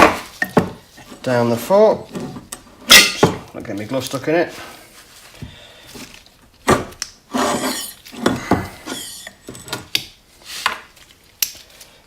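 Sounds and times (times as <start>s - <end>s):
metal parts scraping: 7.3s - 9.8s.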